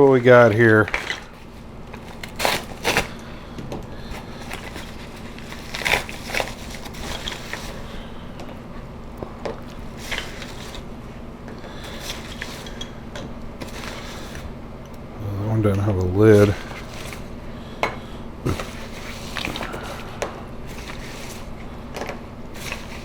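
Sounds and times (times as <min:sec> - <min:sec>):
faint steady hum: 0:00.0 - 0:23.0
packaging crinkling: 0:00.2 - 0:08.2, 0:09.6 - 0:11.0, 0:11.7 - 0:12.9, 0:13.6 - 0:14.6, 0:16.2 - 0:17.4, 0:18.4 - 0:23.0.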